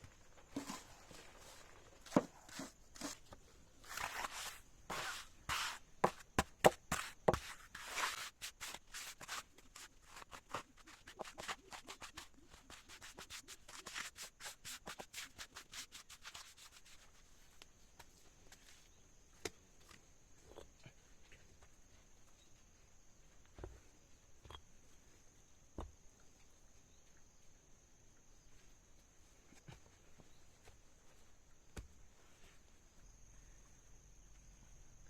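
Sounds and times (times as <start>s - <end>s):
hand scraping hard surface: 0.5s - 16.7s.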